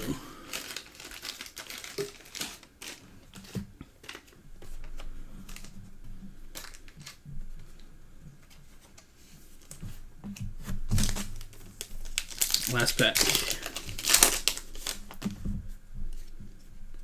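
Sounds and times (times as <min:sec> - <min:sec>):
foil packs rustling: 0:00.0 - 0:05.8, 0:06.4 - 0:07.2, 0:10.7 - 0:15.5.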